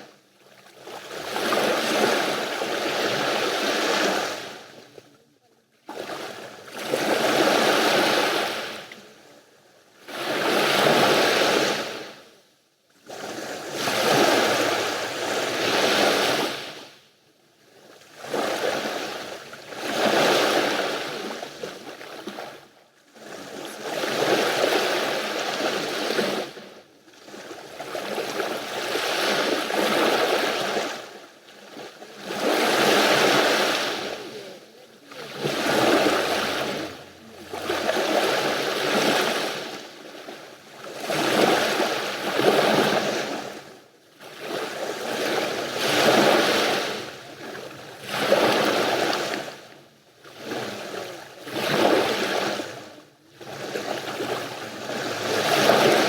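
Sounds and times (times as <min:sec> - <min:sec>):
sea waves washing onto shore: 0:00.7 - 0:05.0, 0:18.0 - 0:22.6, 0:23.2 - 0:56.0.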